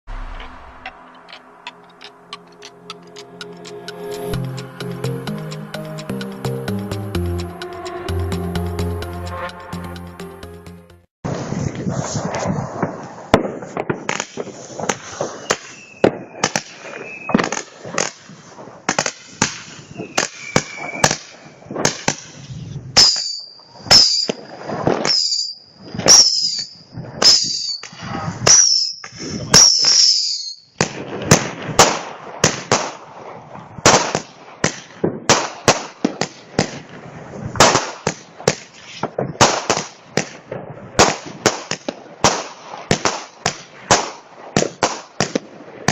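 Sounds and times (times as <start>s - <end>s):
fireworks bangs: 0.0s - 2.1s, 11.2s - 45.9s
high firework whistle: 15.0s - 17.6s, 19.4s - 21.7s, 22.4s - 30.8s.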